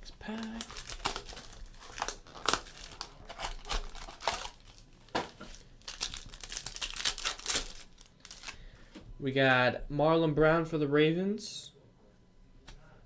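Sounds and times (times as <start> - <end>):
wrapper tearing and crinkling: 0.0 - 8.6.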